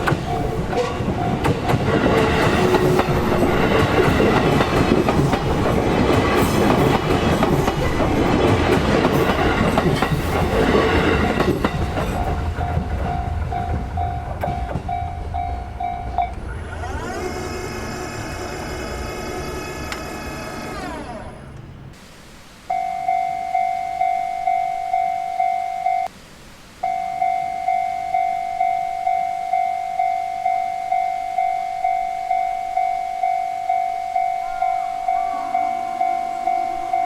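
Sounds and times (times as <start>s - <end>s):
level crossing warning bell: 0.0s - 17.3s, 22.7s - 26.1s, 26.8s - 37.0s
train wheels clattering on rails: 0.0s - 21.0s.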